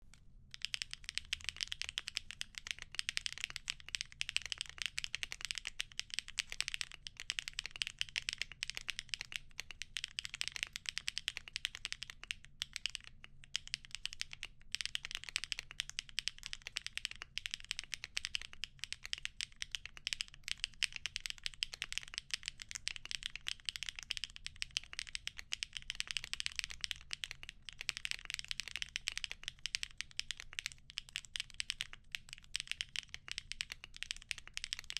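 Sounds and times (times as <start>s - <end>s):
mechanical keyboard typing: 0.5s - 34.9s.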